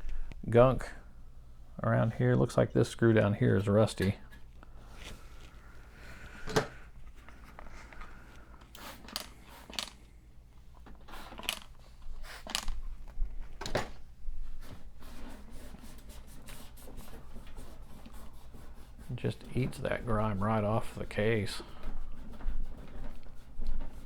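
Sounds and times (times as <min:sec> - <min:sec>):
cloth rubbing computer case: 0:13.7 - 0:24.0.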